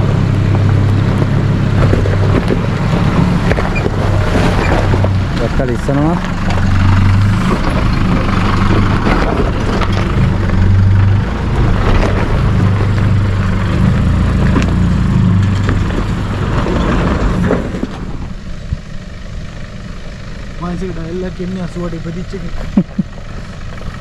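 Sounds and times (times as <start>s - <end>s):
vehicle engine running low: 0.0s - 24.0s
rocks knocking under tyres: 0.4s - 18.2s.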